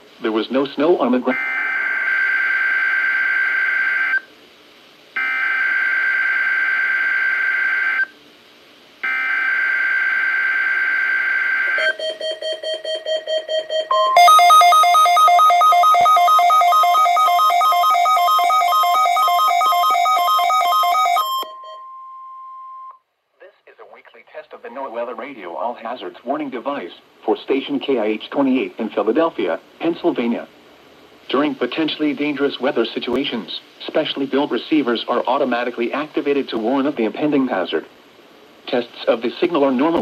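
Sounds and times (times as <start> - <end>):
warning alarm tone: 1.3 - 4.2, 9.0 - 23.0
rapid electronic beeping: 11.8 - 21.5.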